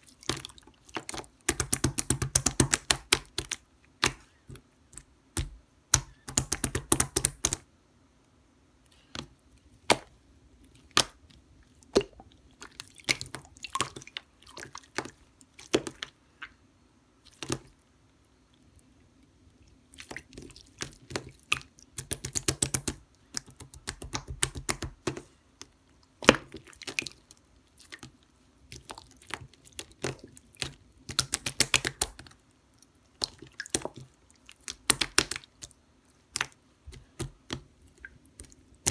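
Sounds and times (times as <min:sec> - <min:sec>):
slime squishing: 0:00.0 - 0:07.6, 0:19.9 - 0:38.9.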